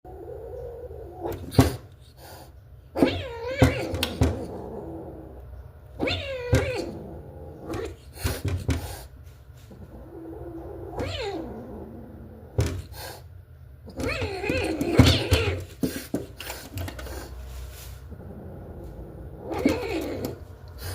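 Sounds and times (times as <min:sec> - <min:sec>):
cat meowing and yowling: 0:03.0 - 0:04.6, 0:06.0 - 0:07.0, 0:10.3 - 0:11.8, 0:13.9 - 0:15.7, 0:19.5 - 0:20.4.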